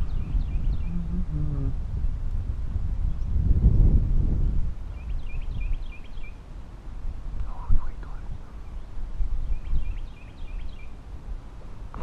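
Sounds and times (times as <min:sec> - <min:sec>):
bird chirping: 0:00.0 - 0:01.3, 0:04.9 - 0:06.4, 0:08.0 - 0:11.0
wind buffeting microphone: 0:00.0 - 0:12.0.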